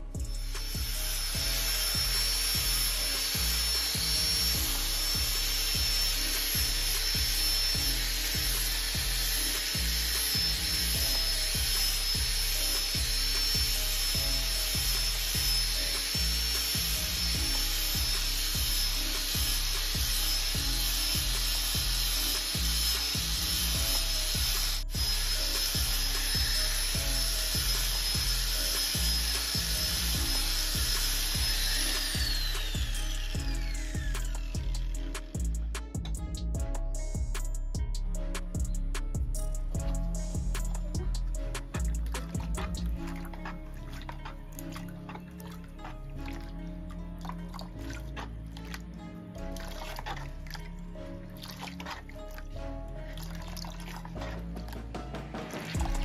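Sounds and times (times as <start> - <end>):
power tool whining: 0.0 - 35.7
background music with beat: 0.0 - 56.0.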